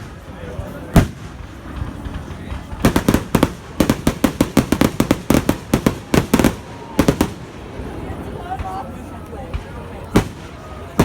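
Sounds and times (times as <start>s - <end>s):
firework bang: 0.9s - 7.4s
firework cracks: 0.9s - 8.0s, 9.5s - 11.0s.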